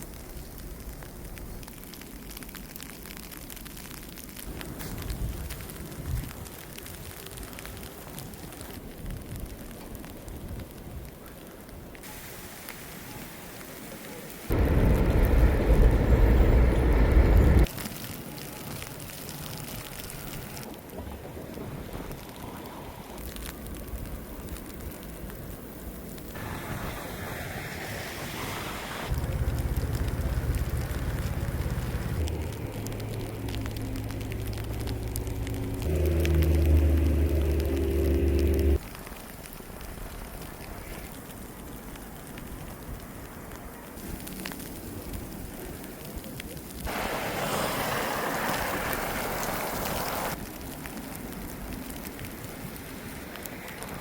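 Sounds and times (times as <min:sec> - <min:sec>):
blizzard wind hissing: 0:21.5 - 0:38.8, 0:42.4 - 0:54.0
loud hiss: 0:46.9 - 0:50.4.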